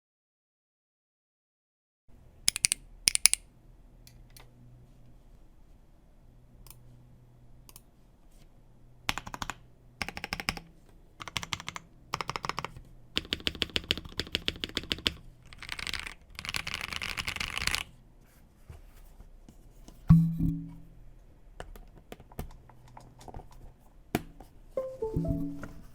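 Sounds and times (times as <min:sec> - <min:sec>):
mechanical keyboard typing: 0:02.5 - 0:03.4, 0:09.1 - 0:17.9.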